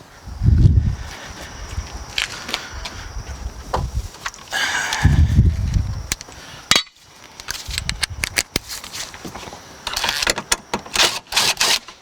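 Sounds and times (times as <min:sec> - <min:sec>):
rustling handling noise: 0:07.2 - 0:10.4.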